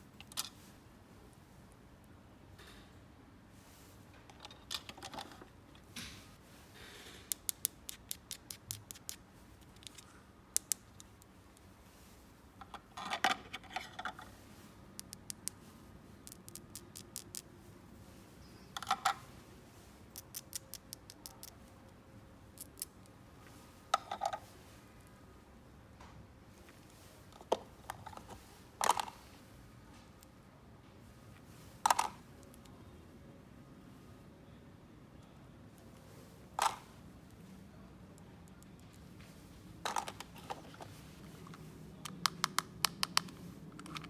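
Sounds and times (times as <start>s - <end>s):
plastic toy pieces clicking: 16.2s - 17.5s, 20.2s - 21.5s, 42.1s - 44.0s.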